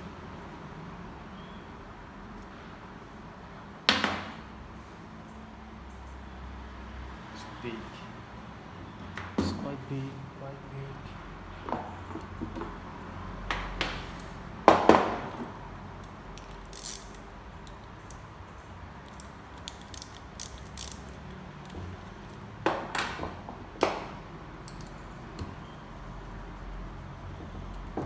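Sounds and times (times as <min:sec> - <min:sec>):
metal tools knocking and clinking: 0:24.6 - 0:25.1.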